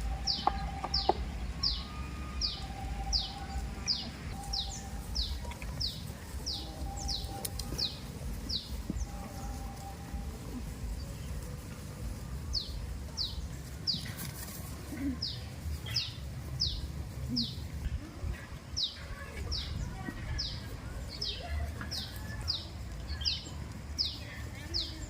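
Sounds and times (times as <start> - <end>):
bird chirping: 0.0 - 17.7
low rumbling background noise: 0.0 - 25.0.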